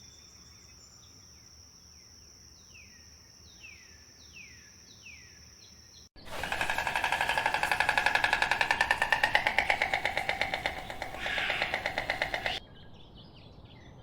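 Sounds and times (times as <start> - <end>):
bird calls sliding downward: 6.2 - 12.6
fast-pulsing buzz: 6.2 - 12.6
high insect drone: 6.2 - 12.6.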